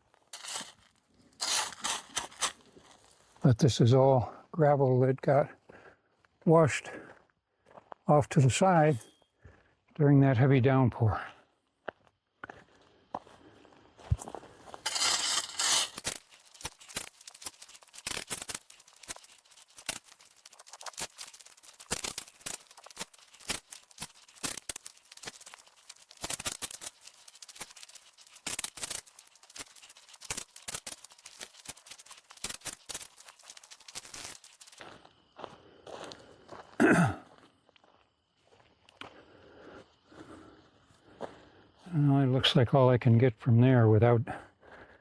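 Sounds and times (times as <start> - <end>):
gravel scraped with hand tool: 0.3 - 3.1, 14.8 - 34.9.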